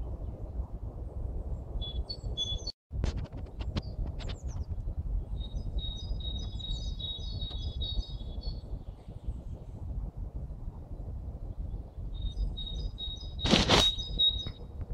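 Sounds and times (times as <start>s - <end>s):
songbirds singing and calling: 1.6s - 2.8s, 3.8s - 9.6s, 11.0s - 14.8s
low background rumble: 3.6s - 13.4s.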